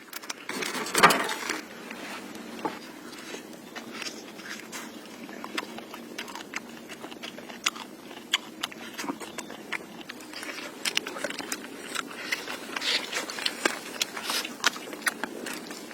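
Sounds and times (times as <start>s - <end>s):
person chewing crunchy food: 0.0s - 15.9s.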